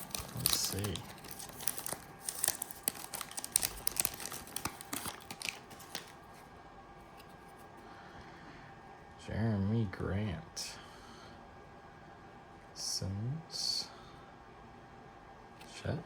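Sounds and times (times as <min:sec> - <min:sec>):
foil pack tearing: 0:00.0 - 0:06.2
cards rustling: 0:00.0 - 0:06.5.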